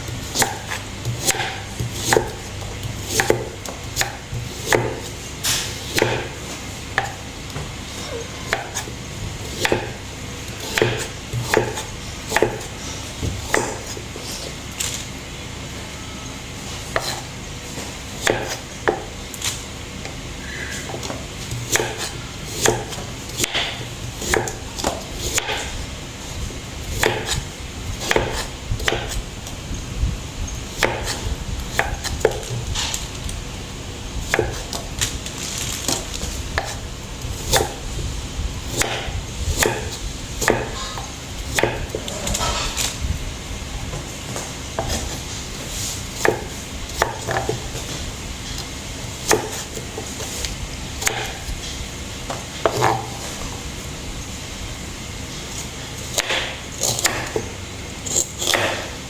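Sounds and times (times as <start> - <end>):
knife chopping on a cutting board: 0.1 - 14.9, 16.8 - 19.6, 20.7 - 25.8, 26.6 - 29.3, 30.7 - 33.1, 34.2 - 35.2, 35.8 - 36.8, 37.4 - 37.9, 38.7 - 43.0, 43.9 - 48.0, 48.6 - 51.7, 52.3 - 53.6, 55.5 - 59.0.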